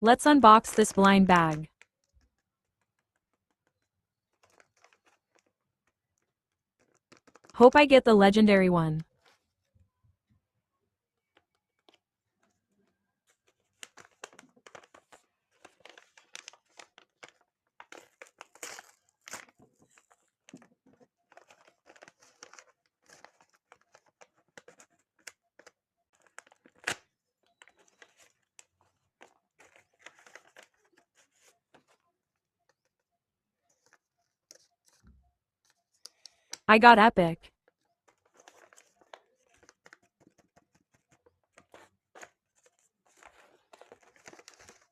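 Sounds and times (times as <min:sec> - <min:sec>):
wrapper crinkling and tearing: 0:13.8 - 0:20.2.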